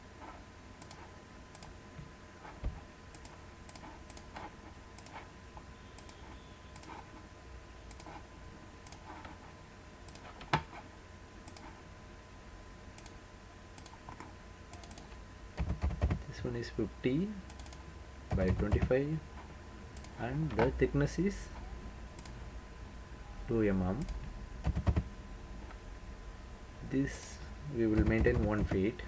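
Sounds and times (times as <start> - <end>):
faint electrical hum: 0.0 - 29.0
computer mouse clicks: 0.3 - 1.8, 2.6 - 5.3, 6.0 - 7.2, 7.9 - 8.2, 8.8 - 9.4, 10.0 - 10.8, 11.4 - 11.8, 12.9 - 13.2, 13.8 - 16.2, 17.5 - 18.9, 20.0 - 20.7, 22.2 - 22.4, 24.0 - 25.1
keystrokes: 0.8 - 1.8, 3.1 - 5.2, 6.0 - 7.0, 7.9 - 8.2, 8.8 - 9.3, 10.0 - 10.7, 11.4 - 11.8, 13.0 - 13.2, 13.8 - 16.2, 17.5 - 19.0, 22.2 - 22.4, 24.0 - 25.1, 28.0 - 28.9.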